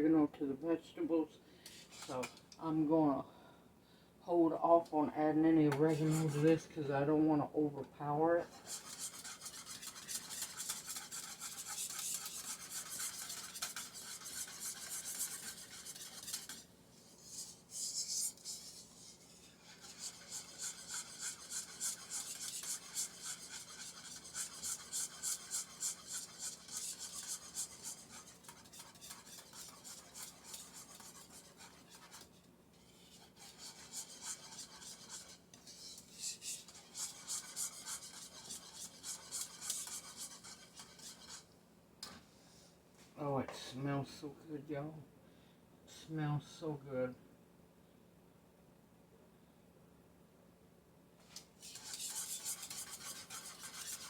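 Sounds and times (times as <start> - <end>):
faint steady hum: 0.0 - 54.0
utensil scraping a saucepan: 1.7 - 2.4, 5.7 - 6.9, 8.4 - 41.5, 51.2 - 54.0.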